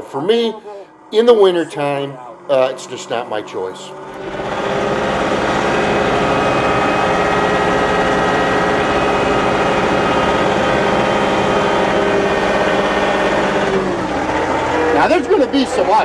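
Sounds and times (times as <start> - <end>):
tractor diesel engine running: 4.0 - 16.0.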